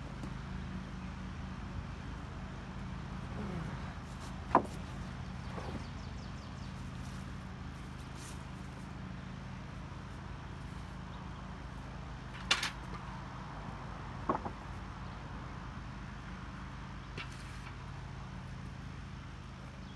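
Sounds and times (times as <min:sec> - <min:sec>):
low mechanical hum: 0:00.0 - 0:19.9
sharp knocks: 0:14.3 - 0:14.6.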